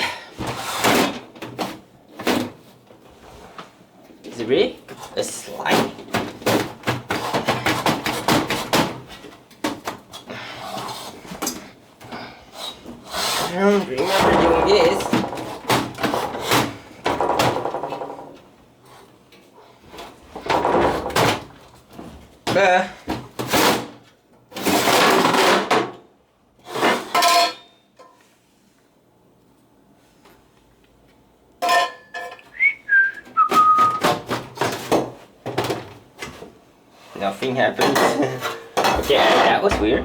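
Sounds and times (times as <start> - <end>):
whistled notes: 32.5 - 34.0.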